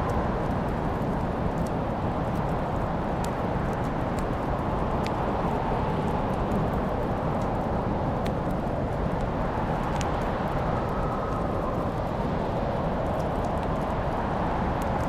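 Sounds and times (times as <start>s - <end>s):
fire crackling in fireplace: 0.0s - 15.0s.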